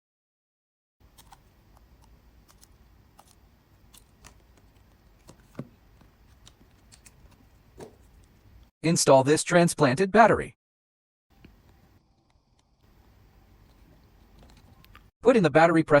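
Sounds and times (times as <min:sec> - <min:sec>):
hand tools clicking on phone parts: 0:01.1 - 0:08.4.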